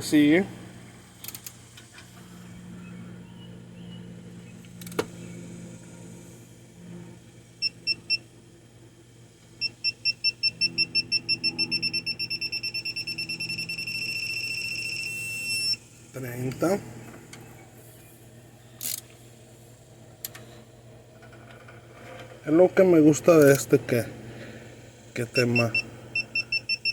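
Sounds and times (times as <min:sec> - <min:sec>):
torque wrench beeping: 0:09.6 - 0:15.8, 0:25.3 - 0:26.9.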